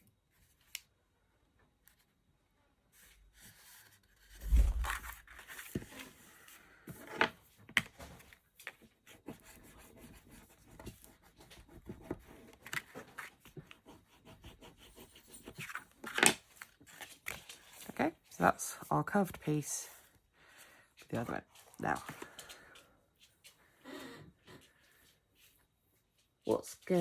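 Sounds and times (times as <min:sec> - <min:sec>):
card rubbing and rustling: 0:03.4 - 0:06.2
low thump: 0:04.4 - 0:05.3.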